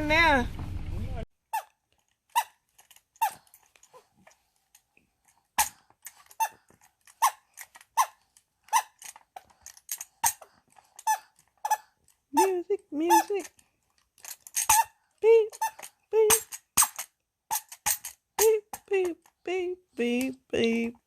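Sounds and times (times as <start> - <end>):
squeaky toy squeaking: 1.5 - 2.6, 3.2 - 4.0, 5.6 - 9.2, 10.2 - 13.6, 14.5 - 18.7.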